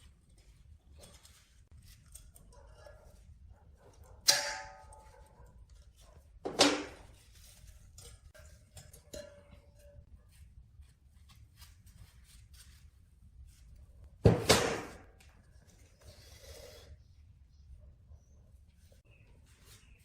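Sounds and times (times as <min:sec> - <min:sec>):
metal clink: 0:08.0 - 0:10.0.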